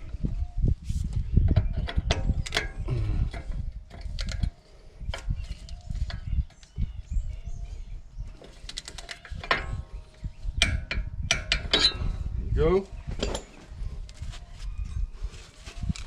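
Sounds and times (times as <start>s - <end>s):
metal socket clinking and knocking: 1.6s - 4.5s, 8.7s - 9.9s, 10.6s - 12.0s.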